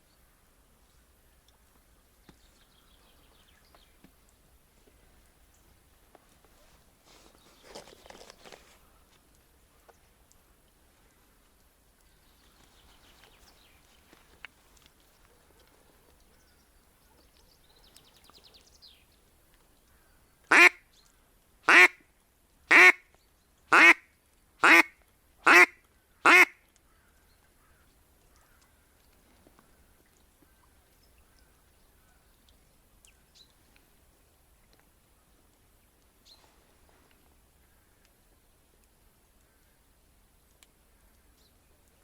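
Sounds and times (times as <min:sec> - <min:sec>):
duck quacking: 0:20.5 - 0:20.8, 0:21.7 - 0:22.0, 0:22.7 - 0:23.0, 0:23.7 - 0:24.0, 0:24.6 - 0:26.6.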